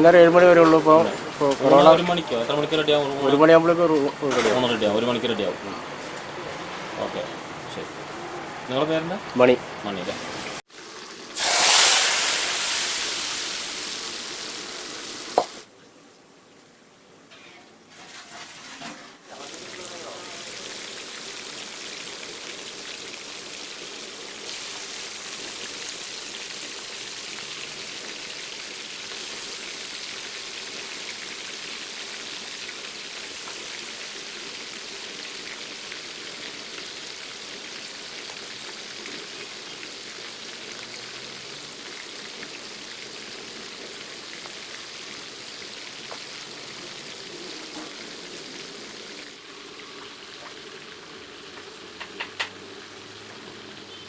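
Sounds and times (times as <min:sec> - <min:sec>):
fish sizzling in hot oil: 0:10.3 - 0:15.6, 0:17.8 - 0:54.0.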